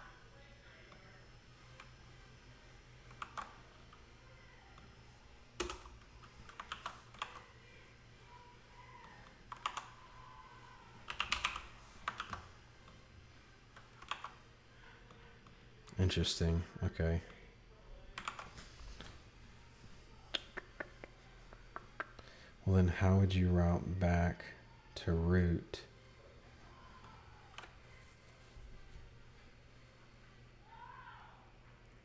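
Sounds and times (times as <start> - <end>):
faint low hum: 0.0 - 32.0
computer keyboard keystrokes: 3.1 - 3.6, 5.6 - 7.5, 9.0 - 10.0, 11.1 - 12.5, 13.8 - 14.4, 18.2 - 18.7.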